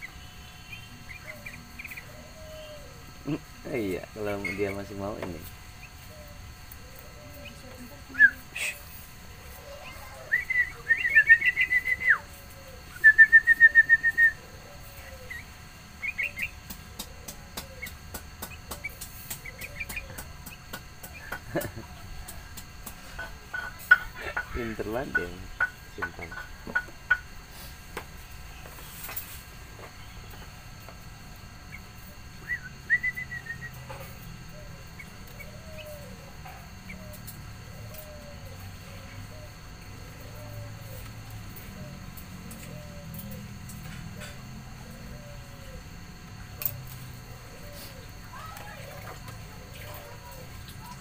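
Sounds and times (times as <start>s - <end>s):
songbird chirping: 0.0s - 22.4s, 31.7s - 45.9s
bird piping notes: 9.6s - 22.1s, 31.7s - 43.9s.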